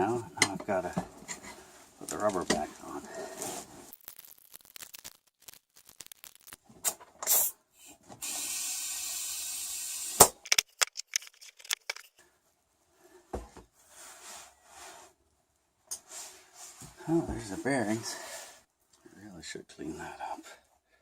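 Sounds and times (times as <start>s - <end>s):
air hissing: 6.8s - 7.6s.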